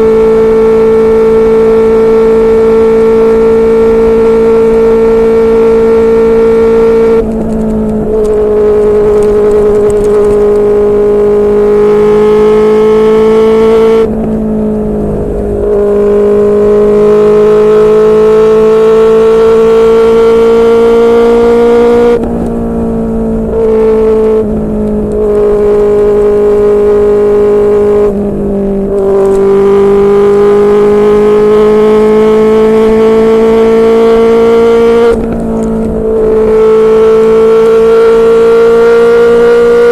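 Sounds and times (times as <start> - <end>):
motorcycle engine at high revs: 0.0 - 39.9.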